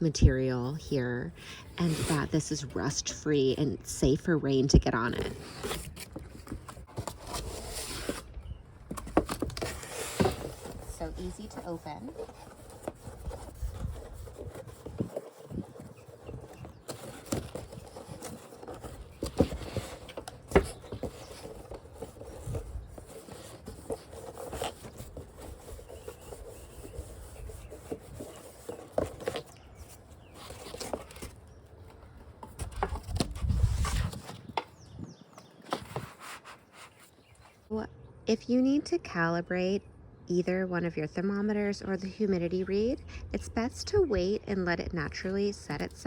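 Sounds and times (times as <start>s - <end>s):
packaging rubbing and rustling: 5.1s - 34.7s.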